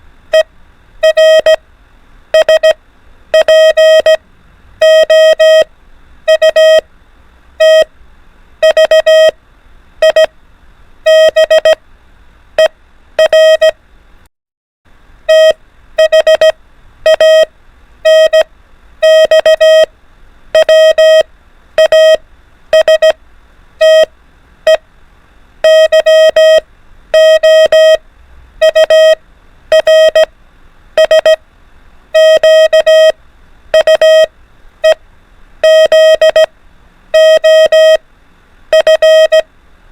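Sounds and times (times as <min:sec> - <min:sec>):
morse code beeps: 0:00.3 - 0:01.6, 0:02.4 - 0:04.2, 0:04.8 - 0:05.7, 0:06.3 - 0:06.8, 0:07.6 - 0:07.9, 0:08.6 - 0:09.4, 0:10.0 - 0:10.3, 0:11.1 - 0:11.8, 0:12.6 - 0:13.8, 0:15.3 - 0:19.9, 0:20.6 - 0:23.2, 0:23.8 - 0:24.1, 0:25.6 - 0:28.0, 0:28.6 - 0:30.3, 0:31.0 - 0:31.4, 0:32.2 - 0:35.0, 0:35.6 - 0:36.5, 0:37.2 - 0:38.0, 0:38.7 - 0:39.5.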